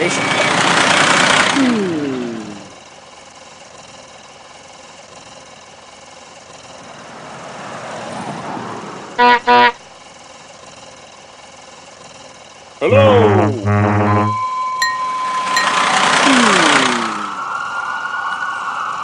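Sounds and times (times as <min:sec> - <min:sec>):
engine-like hum: 0:00.0 - 0:19.0
horn beeps: 0:09.2 - 0:09.8, 0:12.8 - 0:17.3
falling tones winding down: 0:12.8 - 0:18.7.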